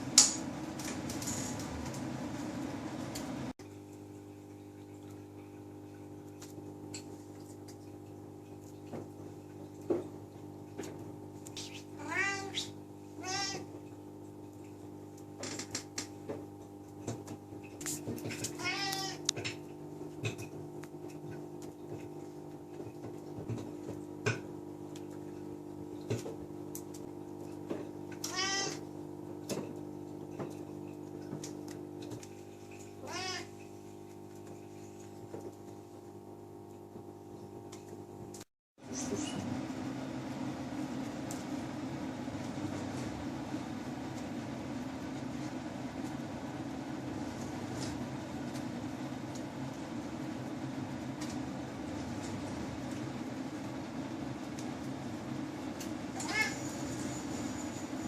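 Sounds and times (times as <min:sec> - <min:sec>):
low electrical hum: 0:00.0 - 0:58.0
cat meowing: 0:12.0 - 0:13.7, 0:18.6 - 0:19.2, 0:28.2 - 0:28.8, 0:33.0 - 0:33.5, 0:56.2 - 0:56.7.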